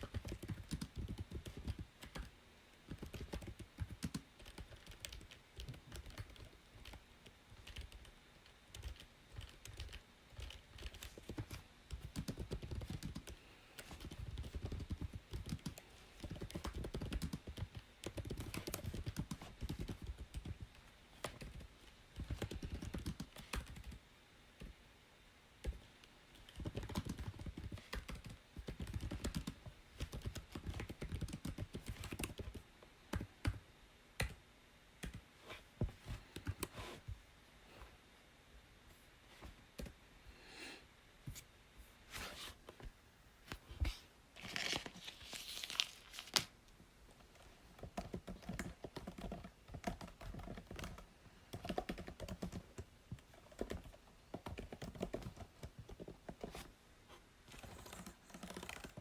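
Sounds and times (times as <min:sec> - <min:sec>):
keyboard typing: 0:00.0 - 0:02.3, 0:02.9 - 0:24.0, 0:25.6 - 0:33.6, 0:35.0 - 0:35.3, 0:47.8 - 0:56.6, 0:57.5 - 0:59.0.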